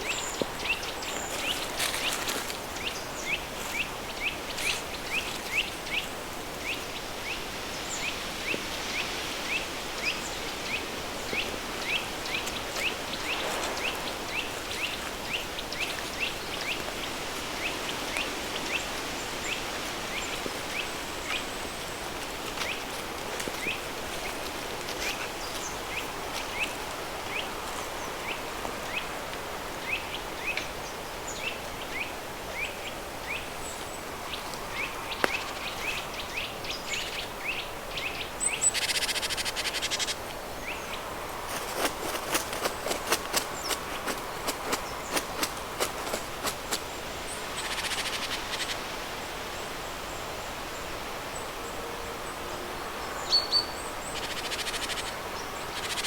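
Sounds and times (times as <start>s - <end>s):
steady hiss: 0.0s - 41.8s.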